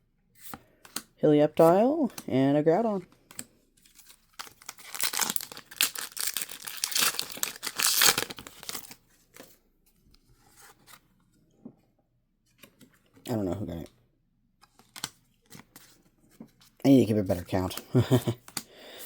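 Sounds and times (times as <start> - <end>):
foil wrapper crackling and tearing: 3.9 - 9.0.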